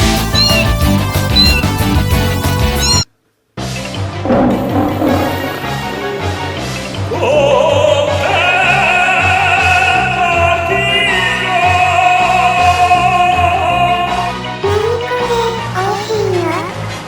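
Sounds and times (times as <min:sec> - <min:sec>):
pulsing bass accompaniment: 0:00.0 - 0:03.0, 0:04.2 - 0:07.6.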